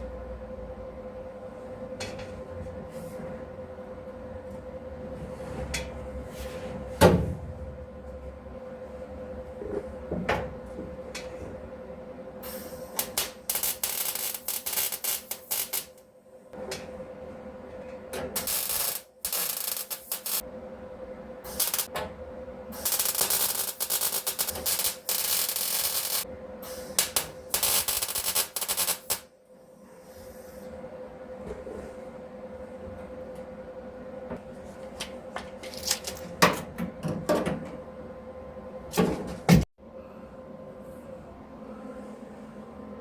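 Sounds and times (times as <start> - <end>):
welding crackling hiss: 12.5 - 15.9, 18.4 - 20.4, 21.5 - 21.9, 22.8 - 26.2, 27.0 - 29.2.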